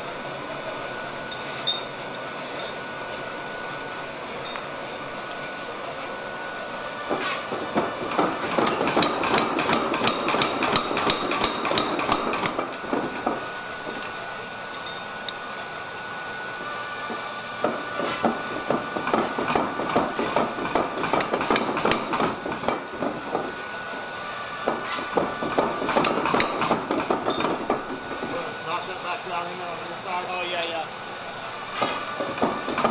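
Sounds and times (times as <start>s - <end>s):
power hammer pounding steel: 7.1s - 13.5s, 17.1s - 23.6s, 24.6s - 28.4s, 31.8s - 32.9s.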